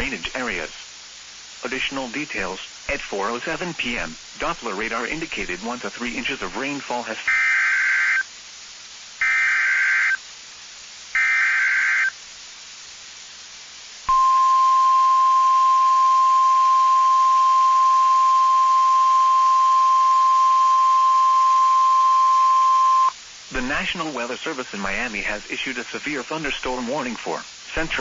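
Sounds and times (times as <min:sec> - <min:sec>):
steady attention tone: 0:14.1 - 0:23.1.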